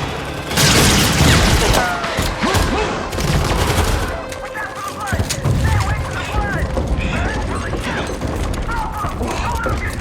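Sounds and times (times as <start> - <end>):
gunfire and blasts: 0.0 - 10.0.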